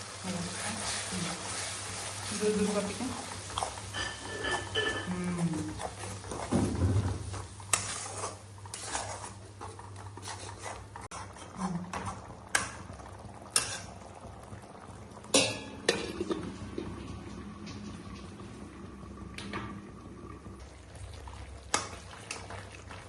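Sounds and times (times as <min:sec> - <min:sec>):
metal spoon stirring in a pot: 0:00.5 - 0:06.5, 0:07.7 - 0:12.0, 0:13.5 - 0:13.9.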